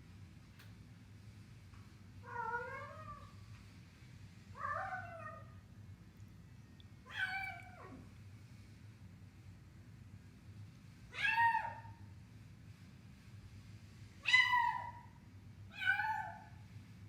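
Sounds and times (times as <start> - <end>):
cat meowing: 7.1 - 8.0, 15.8 - 16.4.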